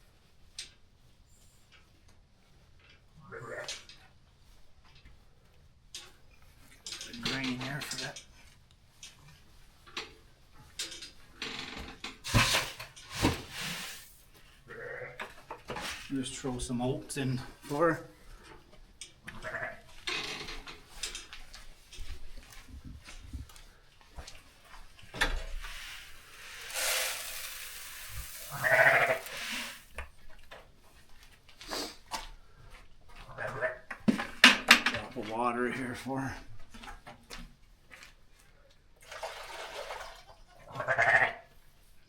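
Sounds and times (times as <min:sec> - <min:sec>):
grain rattling in container: 0:12.3 - 0:14.2, 0:25.6 - 0:30.0
rustling hiss: 0:12.3 - 0:14.3, 0:25.2 - 0:30.0
sheep bleating: 0:28.5 - 0:29.2.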